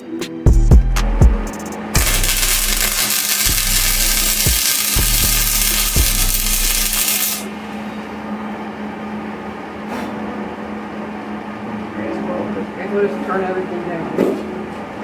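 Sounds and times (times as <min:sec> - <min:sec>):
angle grinder grinding metal: 0:02.0 - 0:07.5.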